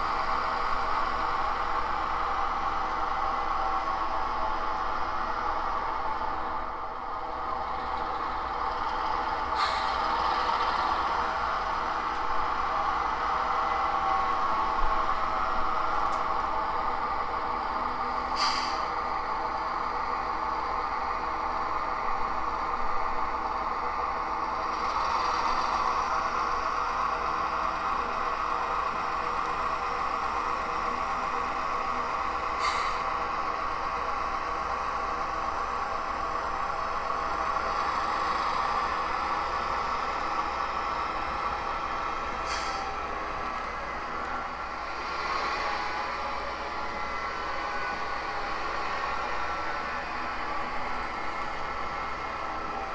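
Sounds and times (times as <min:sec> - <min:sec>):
model train diesel engine sound: 0:00.0 - 0:52.9
brief air hisses: 0:09.6 - 0:10.0, 0:18.4 - 0:18.9, 0:32.6 - 0:33.1, 0:42.4 - 0:43.0.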